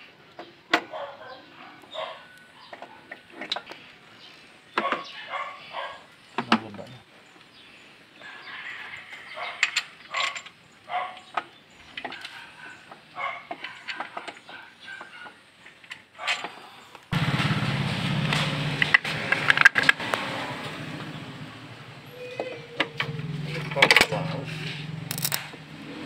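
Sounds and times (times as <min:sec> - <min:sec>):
metal tools clicking and knocking: 0:09.1 - 0:10.6, 0:23.6 - 0:24.2, 0:25.1 - 0:25.6.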